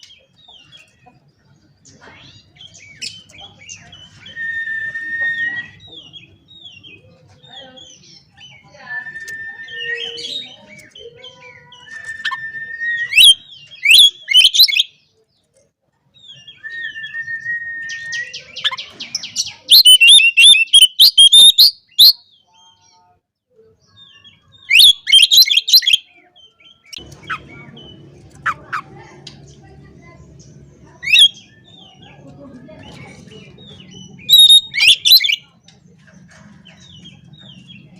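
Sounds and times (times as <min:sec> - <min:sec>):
bird singing whistles and chatter: 0:02.2 - 0:15.2, 0:16.2 - 0:23.0, 0:23.8 - 0:37.9.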